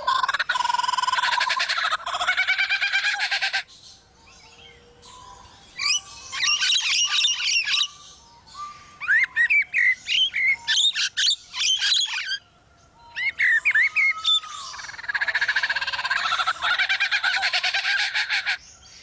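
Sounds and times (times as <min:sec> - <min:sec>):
lyrebird singing mimicked calls: 0:00.0 - 0:03.7, 0:05.8 - 0:12.4, 0:13.1 - 0:18.6.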